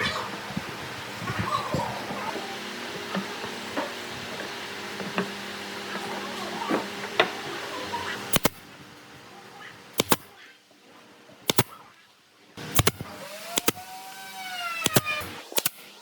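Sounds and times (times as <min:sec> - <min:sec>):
sharp double clicks: 0:08.3 - 0:08.6, 0:10.0 - 0:10.3, 0:11.5 - 0:11.8, 0:12.6 - 0:13.9, 0:14.8 - 0:15.9.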